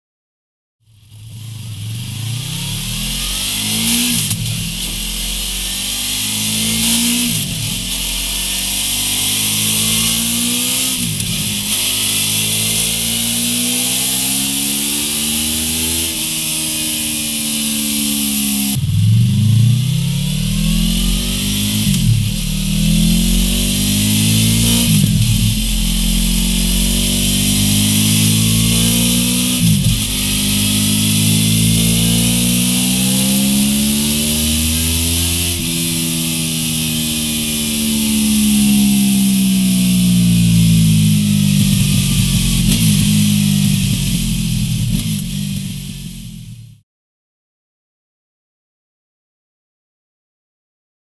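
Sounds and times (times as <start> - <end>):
motorcycle engine revving through gears: 0.8 - 46.8.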